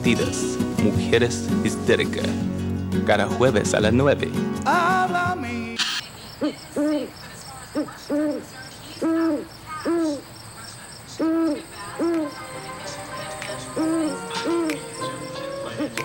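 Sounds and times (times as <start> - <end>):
owl-like hooting: 7.7 - 10.3, 11.2 - 16.0.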